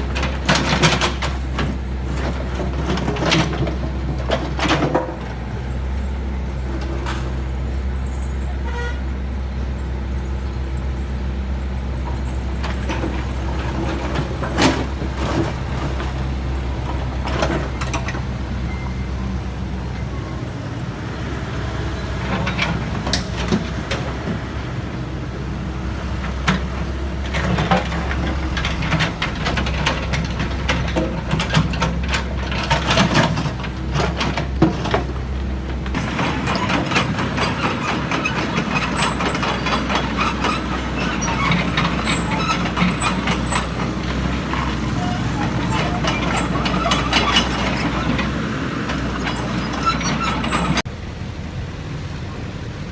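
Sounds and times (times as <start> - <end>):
diesel machinery running: 0.0 - 52.9
metallic clanks and knocks: 35.9 - 50.9.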